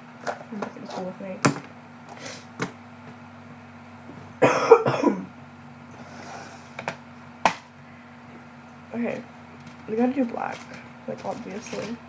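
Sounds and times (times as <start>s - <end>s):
person coughing: 4.4s - 5.3s.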